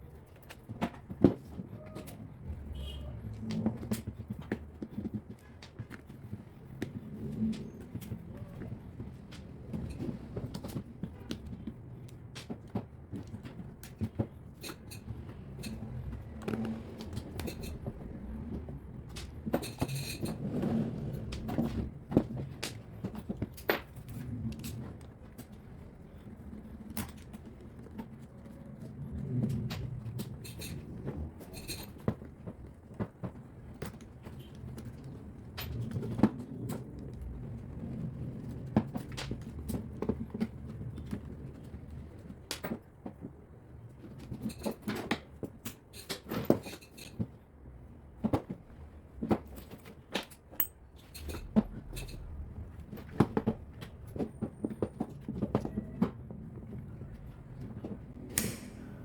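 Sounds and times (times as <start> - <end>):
low rumble: 51.0 - 54.3.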